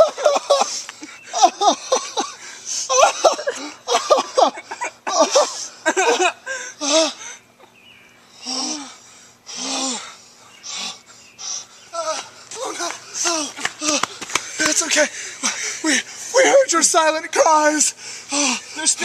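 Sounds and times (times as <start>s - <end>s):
person sobbing and wailing: 0.0s - 7.3s, 11.9s - 14.2s, 14.8s - 16.8s, 18.3s - 19.0s.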